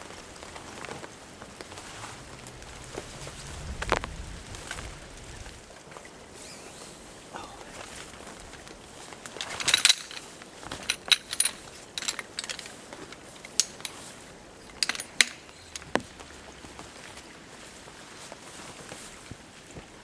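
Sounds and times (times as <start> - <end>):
gear rustling: 0.0 - 5.6, 7.8 - 16.9
metallic clicks and clinks: 9.3 - 16.3.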